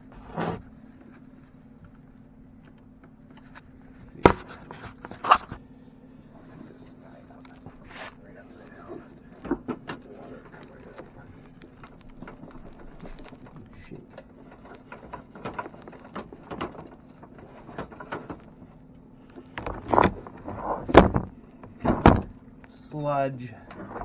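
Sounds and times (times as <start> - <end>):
steady low hum: 0.0 - 24.0
louder clunks: 4.1 - 5.6, 12.1 - 22.6.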